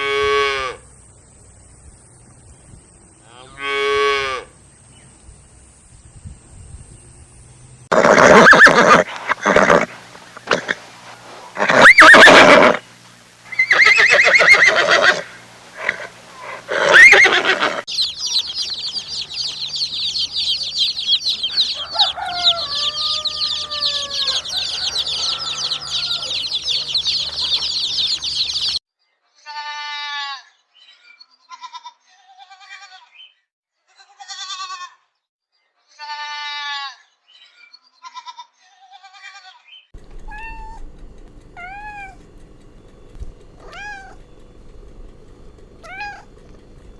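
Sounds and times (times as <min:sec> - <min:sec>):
animal bleats: 0:00.0 - 0:00.9, 0:03.2 - 0:04.6, 0:11.6 - 0:12.8, 0:13.5 - 0:17.9, 0:21.3 - 0:27.9, 0:29.4 - 0:30.6, 0:31.5 - 0:33.2, 0:33.9 - 0:35.1, 0:35.9 - 0:37.1, 0:38.0 - 0:40.8, 0:43.6 - 0:44.2, 0:45.8 - 0:46.4
short animal cries: 0:11.6 - 0:12.8, 0:13.5 - 0:17.9, 0:21.8 - 0:26.5
chicks peeping: 0:17.9 - 0:28.8.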